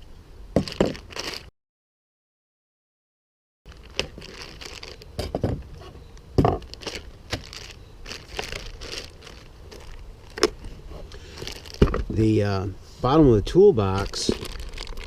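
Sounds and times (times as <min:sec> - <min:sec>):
rustling: 0:00.6 - 0:01.5, 0:03.7 - 0:13.2, 0:13.8 - 0:15.0.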